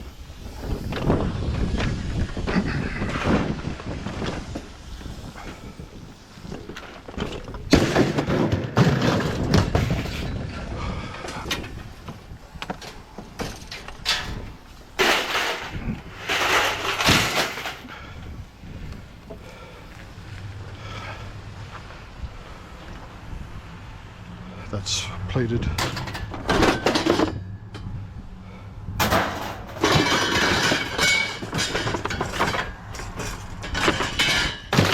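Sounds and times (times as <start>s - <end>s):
scrap metal clattering: 6.5s - 12.0s, 12.8s - 18.3s, 25.6s - 27.9s, 29.0s - 34.9s.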